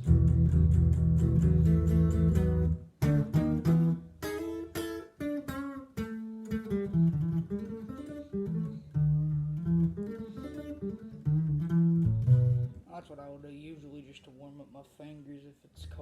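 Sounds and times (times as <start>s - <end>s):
electric guitar power chords: 0.0s - 12.8s.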